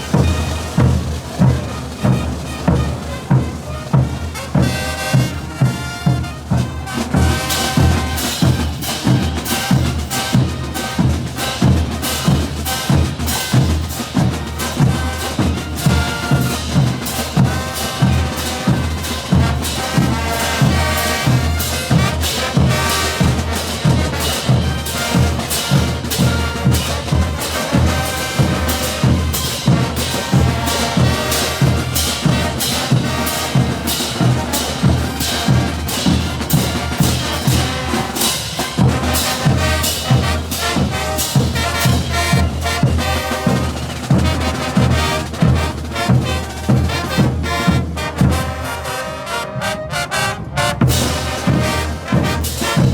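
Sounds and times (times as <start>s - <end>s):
heavy drum beat: 0.0s - 48.9s, 50.4s - 52.9s
brass melody: 0.0s - 52.9s.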